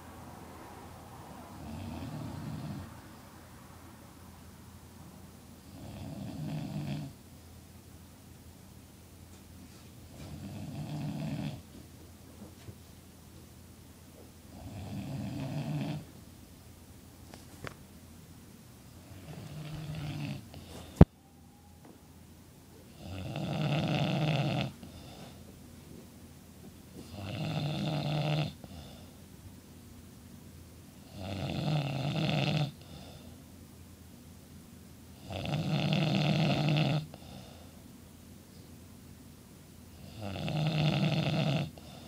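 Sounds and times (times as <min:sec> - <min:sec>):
man snoring loudly: 0:01.6 - 0:03.0, 0:05.7 - 0:07.2, 0:10.4 - 0:11.6, 0:14.5 - 0:16.1, 0:19.2 - 0:20.6, 0:22.9 - 0:25.1, 0:27.1 - 0:29.0, 0:31.0 - 0:33.0, 0:35.2 - 0:37.4, 0:40.0 - 0:42.0
soft breath sounds: 0:19.1 - 0:21.1, 0:24.7 - 0:26.1, 0:32.8 - 0:33.6, 0:37.0 - 0:38.8.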